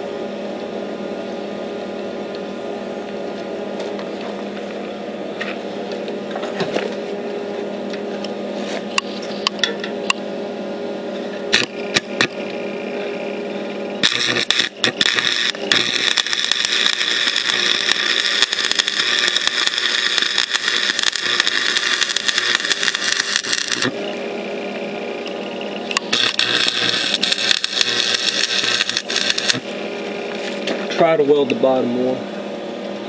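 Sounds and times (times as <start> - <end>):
steady hum: 0.0 - 33.0
welding arc crackling: 11.5 - 12.9, 13.9 - 31.0.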